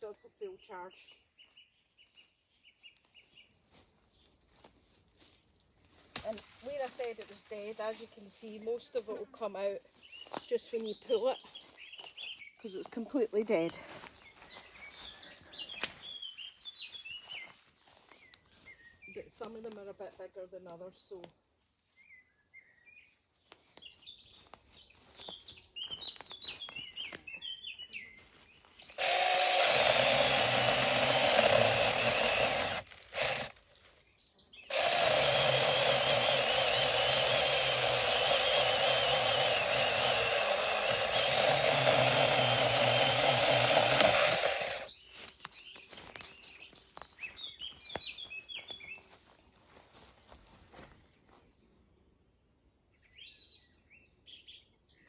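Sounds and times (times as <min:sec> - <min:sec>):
birds chirping: 0:06.3 - 0:21.2, 0:21.9 - 0:49.4
mini chainsaw cutting branches: 0:28.9 - 0:33.7, 0:34.7 - 0:44.9.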